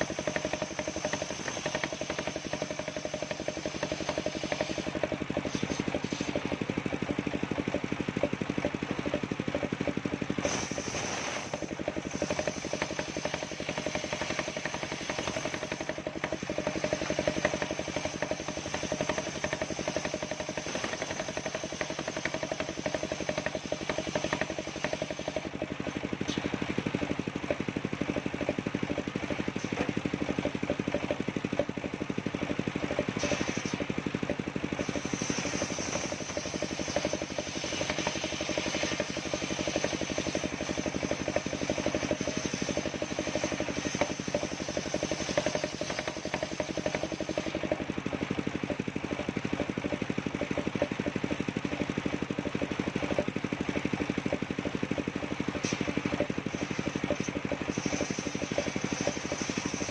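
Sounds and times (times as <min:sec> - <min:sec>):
circular saw running: 0:00.0 - 0:59.9
high saw whine: 0:55.6 - 0:59.9.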